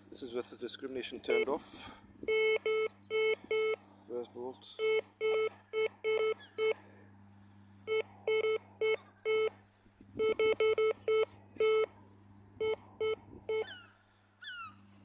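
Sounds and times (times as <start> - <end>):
low steady hum: 0.0 - 15.0
metal detector beeps: 1.3 - 1.6, 2.3 - 3.8, 4.8 - 6.8, 7.9 - 9.6, 10.2 - 11.9, 12.6 - 13.8.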